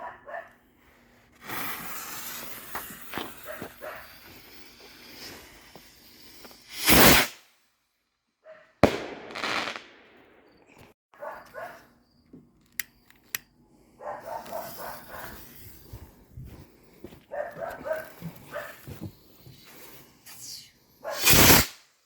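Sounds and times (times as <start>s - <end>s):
dog barking: 0.0s - 0.6s, 3.5s - 4.1s, 8.4s - 8.8s, 11.2s - 11.9s, 14.0s - 15.4s, 17.3s - 18.8s
firework hissing burst: 1.4s - 7.4s, 8.8s - 10.1s, 21.2s - 21.8s
firework bang with crackling: 6.7s - 7.4s, 8.8s - 10.1s, 21.2s - 21.8s
small firework pops: 8.8s - 10.8s.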